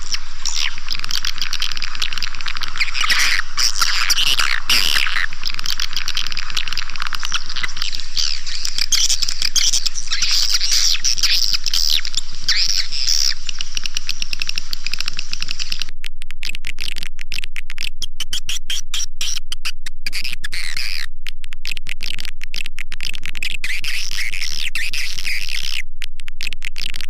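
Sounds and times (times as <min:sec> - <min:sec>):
high bird twittering chirps: 0:00.0 - 0:15.9.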